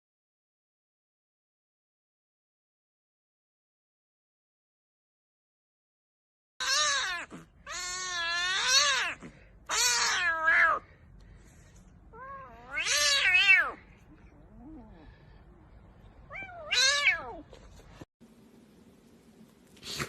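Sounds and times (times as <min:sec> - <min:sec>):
cat meowing: 0:06.6 - 0:11.0, 0:12.1 - 0:13.9, 0:16.3 - 0:17.5.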